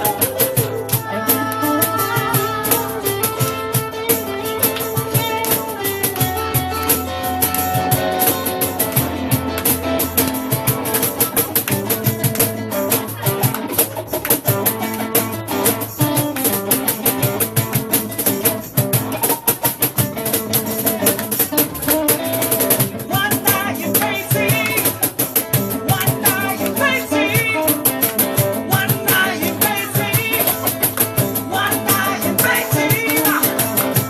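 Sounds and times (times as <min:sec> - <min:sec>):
voices singing along: 0:00.0 - 0:04.4, 0:23.1 - 0:25.2, 0:25.8 - 0:28.0, 0:28.6 - 0:34.0
ukuleles strumming: 0:00.0 - 0:34.0.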